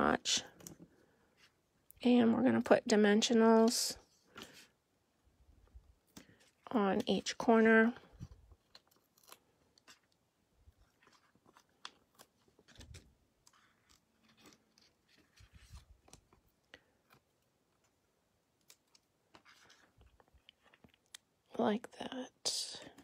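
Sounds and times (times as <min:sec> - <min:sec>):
paper ticks and crinkles: 0:06.0 - 0:21.3.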